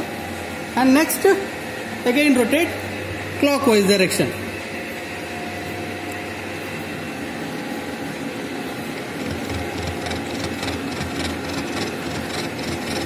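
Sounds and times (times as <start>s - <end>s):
milling machine running: 8.8s - 13.0s
fast even ticking: 9.2s - 13.0s.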